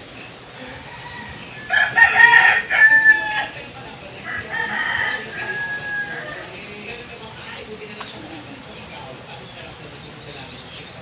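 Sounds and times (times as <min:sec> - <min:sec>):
rooster crowing: 0:00.6 - 0:03.6, 0:04.2 - 0:06.5.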